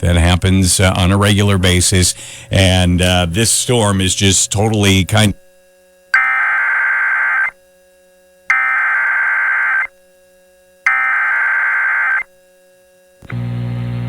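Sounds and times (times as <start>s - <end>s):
steady buzzing tone: 0.0s - 14.0s
data tone bursts: 6.2s - 7.6s, 8.5s - 9.9s, 10.9s - 12.3s.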